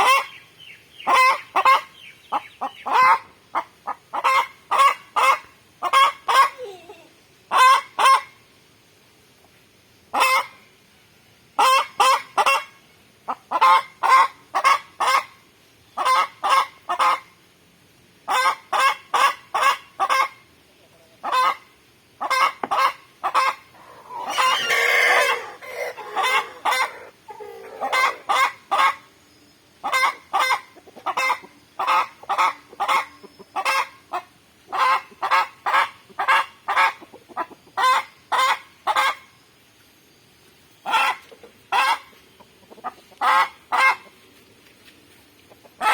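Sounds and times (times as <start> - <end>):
chickens clucking: 0.0 - 8.4, 10.1 - 10.6, 11.6 - 17.4, 18.3 - 29.2, 29.8 - 39.4, 40.7 - 45.9
chicken drawn-out call: 1.0 - 6.6, 18.3 - 29.1, 29.8 - 39.3, 40.8 - 44.2, 45.5 - 45.9.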